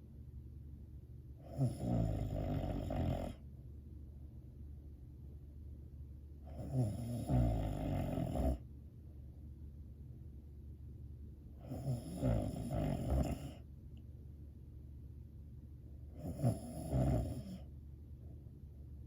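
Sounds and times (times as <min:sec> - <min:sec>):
person snoring: 0:01.4 - 0:03.4, 0:06.5 - 0:08.6, 0:11.6 - 0:13.6, 0:16.2 - 0:17.6.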